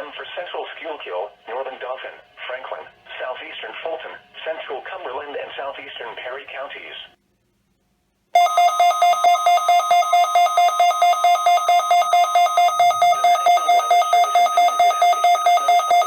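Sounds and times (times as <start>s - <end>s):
pulsing two-pitch alert beeping: 8.4s - 16.0s.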